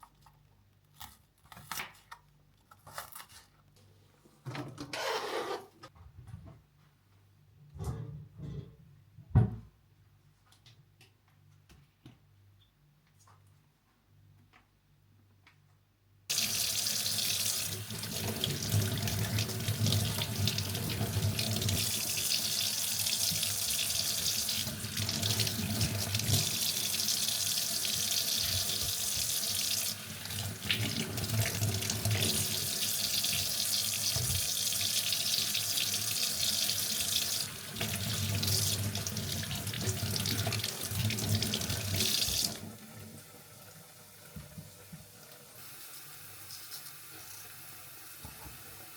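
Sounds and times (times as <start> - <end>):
tap running into a sink: 48.2 - 48.6.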